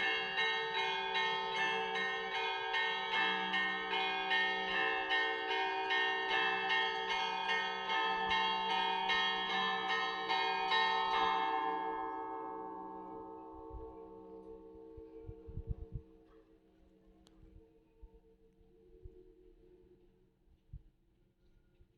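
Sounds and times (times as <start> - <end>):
large bells ringing: 0.0 - 15.2.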